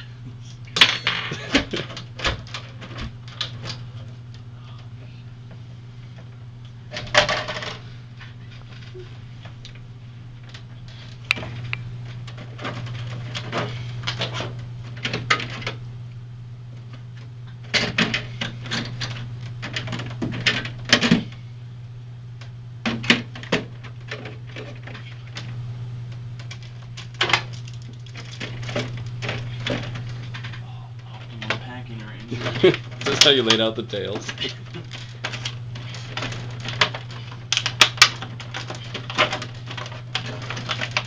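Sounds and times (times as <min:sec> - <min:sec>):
steady low hum: 0:00.0 - 0:41.0
plastic bottles clattering: 0:32.3 - 0:41.0.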